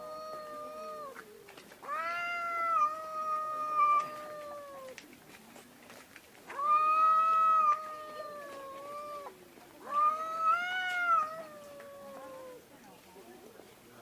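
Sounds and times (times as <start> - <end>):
cat meowing: 0.0 - 1.2, 1.8 - 5.0, 6.5 - 12.6.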